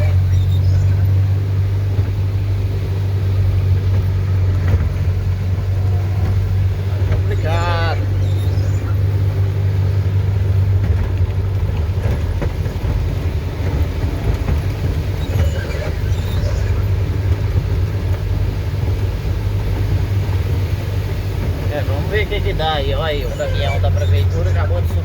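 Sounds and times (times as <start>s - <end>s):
vehicle engine humming: 0.0s - 25.0s
small rattles and knocks: 8.2s - 22.4s.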